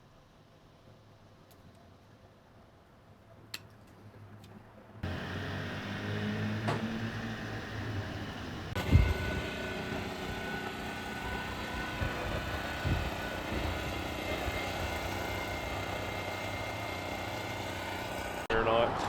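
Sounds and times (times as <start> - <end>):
engine droning: 5.0 - 19.0.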